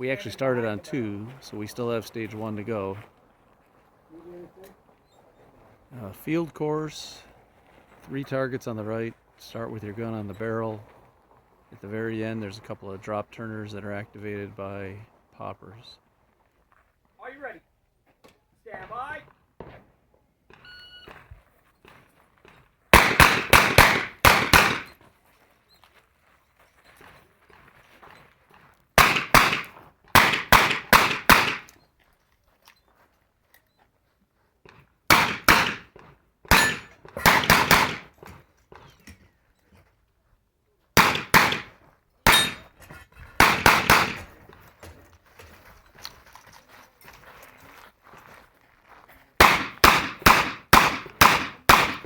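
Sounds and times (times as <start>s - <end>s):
revolver gunshots: 22.9s - 25.0s, 29.0s - 31.7s, 35.1s - 35.9s, 36.5s - 38.1s, 41.0s - 42.6s, 43.4s - 44.3s, 49.4s - 52.0s
metallic ring of steel target: 36.5s - 37.5s, 42.3s - 42.7s.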